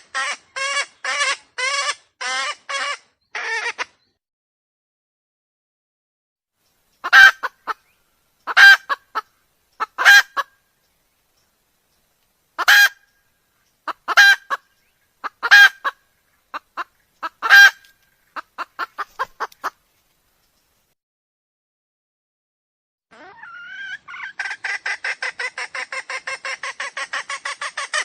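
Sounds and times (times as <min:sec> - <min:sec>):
junglefowl calling: 0:00.0 - 0:04.0, 0:07.0 - 0:10.6, 0:12.6 - 0:19.8, 0:23.1 - 0:28.0
short clucks: 0:16.6 - 0:19.8.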